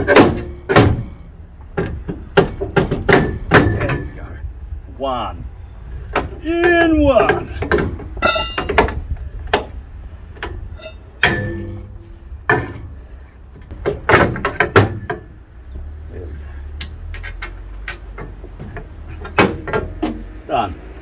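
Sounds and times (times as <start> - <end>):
low steady rumble: 0.0 - 21.0
hand tools knocking on metal: 6.2 - 9.7.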